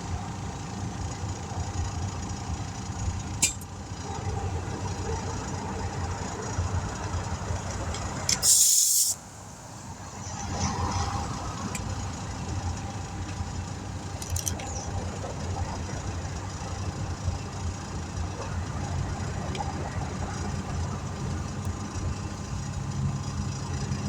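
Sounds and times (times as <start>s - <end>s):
blast of hissing air: 8.4s - 9.4s
air compressor running: 8.4s - 9.8s.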